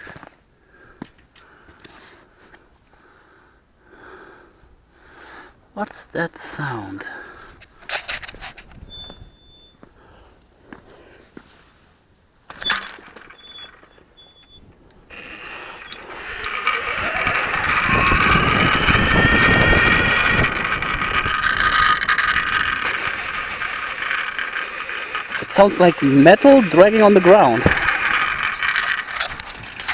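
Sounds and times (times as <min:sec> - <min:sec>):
tyre and wind noise: 0:07.6 - 0:09.8, 0:12.5 - 0:26.1, 0:27.5 - 0:29.9
electric motor whining: 0:15.1 - 0:29.9.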